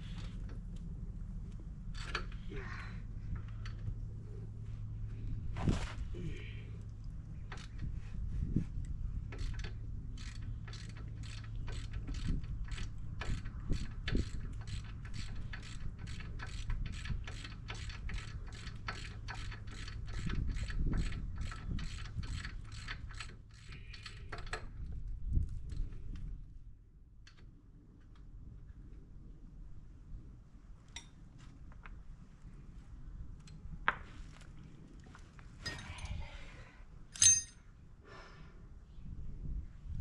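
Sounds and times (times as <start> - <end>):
ratchet clicking: 1.9 - 2.4, 7.5 - 7.8, 9.3 - 24.6.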